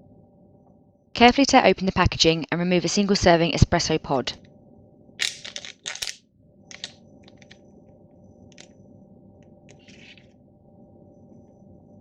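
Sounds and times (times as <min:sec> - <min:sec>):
low steady hum: 0:00.0 - 0:12.0
wrapper crinkling and rustling: 0:05.2 - 0:07.6.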